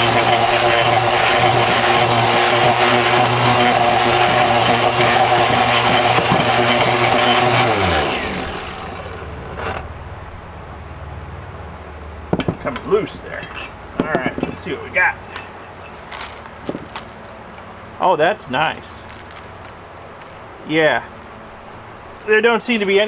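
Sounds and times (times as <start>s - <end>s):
machine spinning down: 0.0s - 10.2s
hammer mill crusher running: 0.0s - 10.4s, 12.3s - 17.4s.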